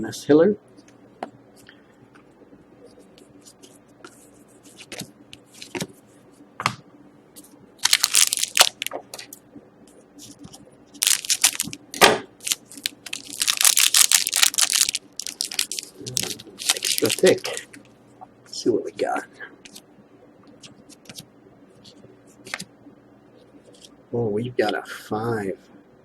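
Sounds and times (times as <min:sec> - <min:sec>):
wrapper tearing and crinkling: 0:07.8 - 0:08.9, 0:11.0 - 0:11.8, 0:12.4 - 0:17.8.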